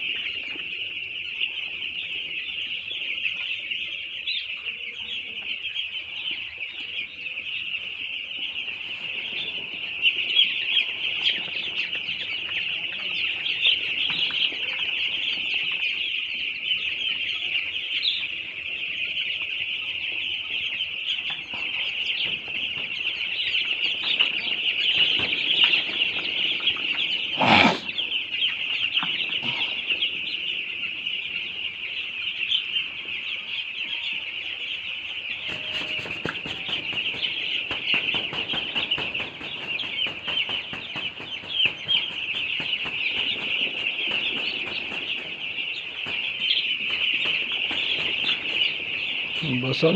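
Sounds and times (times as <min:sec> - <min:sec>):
chicks peeping in chorus: 0:00.0 - 0:49.9
sharp knock: 0:35.5 - 0:45.2.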